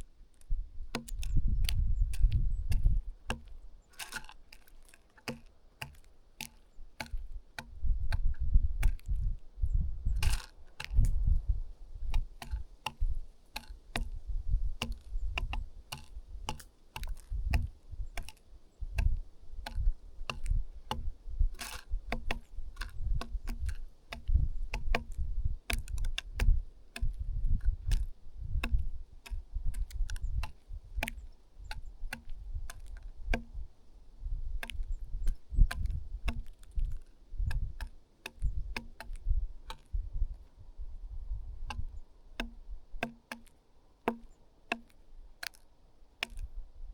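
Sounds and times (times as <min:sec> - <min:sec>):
birds pecking on hard surface: 0:00.0 - 0:09.5, 0:10.1 - 0:46.6.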